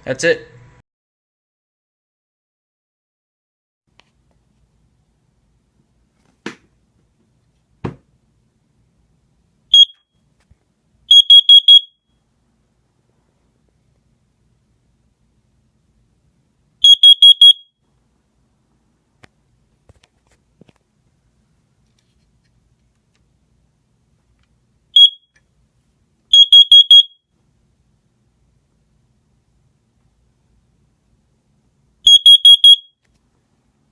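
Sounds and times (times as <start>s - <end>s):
alarm high-pitched beeps: 9.8s - 10.0s, 11.1s - 12.0s, 16.8s - 17.7s, 25.0s - 25.3s, 26.4s - 27.2s, 32.1s - 32.9s.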